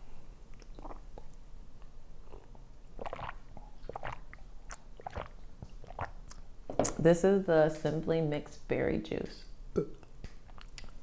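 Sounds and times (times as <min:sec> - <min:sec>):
chewing and biting food: 0:02.3 - 0:06.4
wet mouth clicks and smacks: 0:10.0 - 0:11.0.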